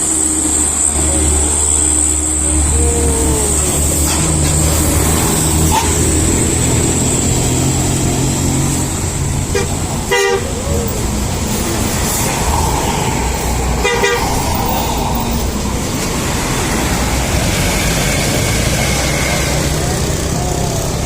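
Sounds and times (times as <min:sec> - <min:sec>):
bus engine running: 0:00.0 - 0:21.0
musical horn toots: 0:09.5 - 0:10.6.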